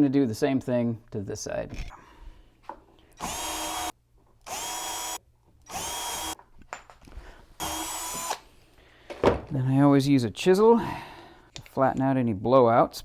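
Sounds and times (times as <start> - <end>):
power drill boring: 3.2 - 6.4, 7.6 - 8.4.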